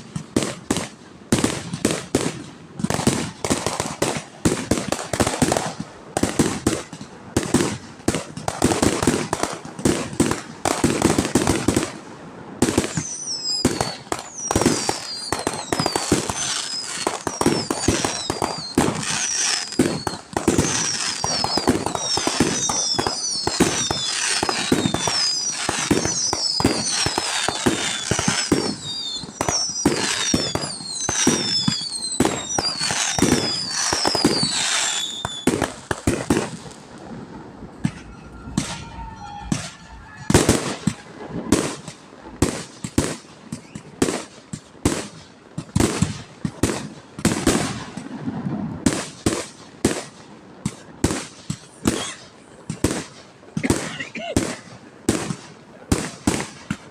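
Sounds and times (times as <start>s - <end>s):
fireworks booms and cracks: 0.0s - 56.9s
fireworks whistles: 12.6s - 44.2s.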